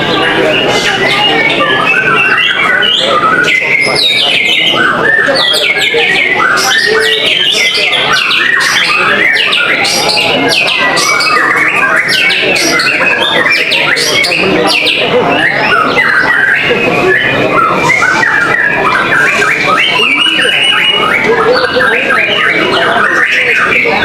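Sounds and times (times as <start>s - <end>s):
birds singing whistled notes: 0.0s - 24.0s.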